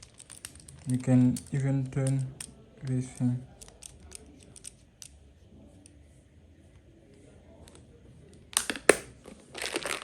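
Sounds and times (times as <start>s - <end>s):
tool kit crinkling and rustling: 9.2s - 10.0s.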